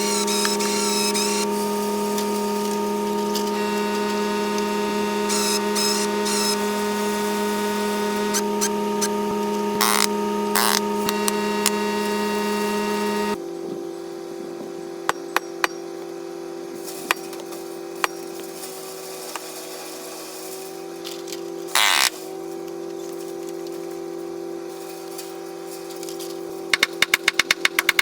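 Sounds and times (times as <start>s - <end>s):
skid steer engine running: 0.0s - 13.4s.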